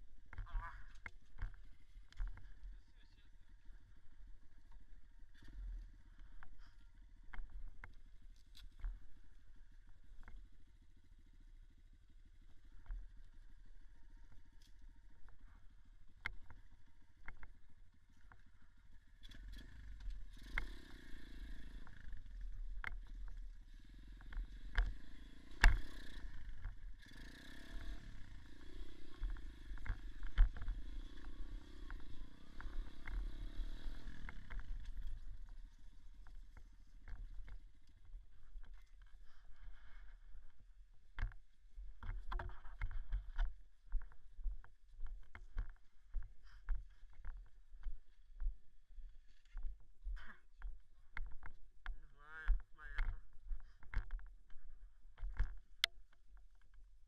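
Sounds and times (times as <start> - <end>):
dirt bike engine revving: 19.3 - 22.3, 23.7 - 36.5.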